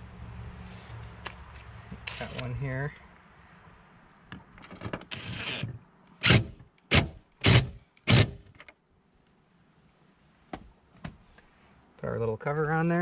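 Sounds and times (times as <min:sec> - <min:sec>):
cordless drill driving a bolt: 0:02.0 - 0:02.5, 0:05.0 - 0:08.4.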